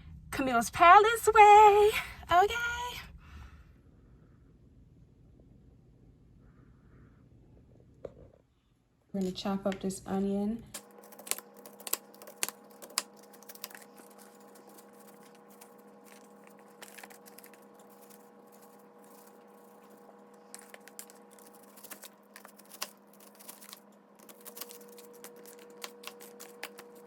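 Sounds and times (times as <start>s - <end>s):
steady hum: 0.0s - 27.0s.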